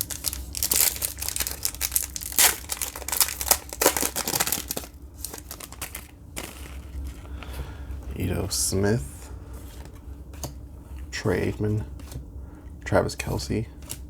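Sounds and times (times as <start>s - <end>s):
plastic wrapper ripping: 0.0s - 7.2s
plastic wrapper crackling: 0.0s - 7.3s.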